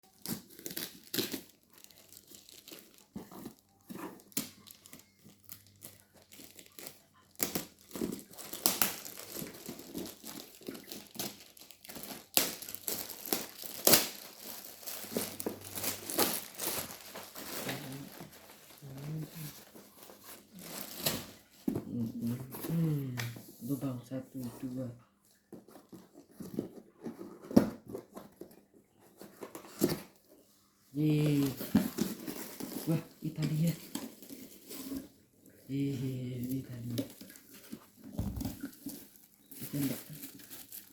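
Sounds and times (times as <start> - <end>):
packaging crinkling and tearing: 0.0 - 21.6, 31.1 - 35.2, 36.7 - 40.9.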